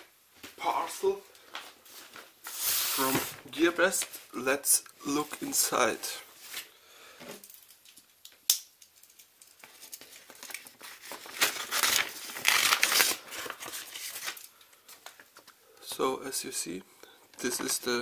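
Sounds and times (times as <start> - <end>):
packaging tearing and crinkling: 9.1 - 15.3.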